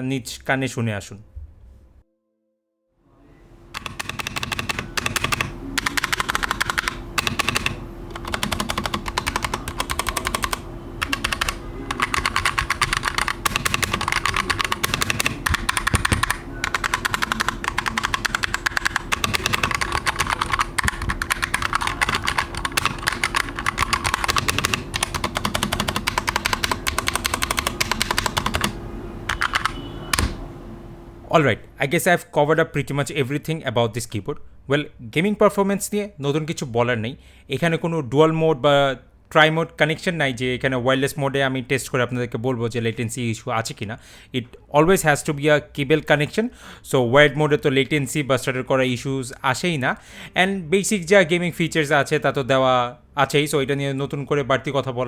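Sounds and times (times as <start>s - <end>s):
mechanical keyboard typing: 3.7s - 30.4s.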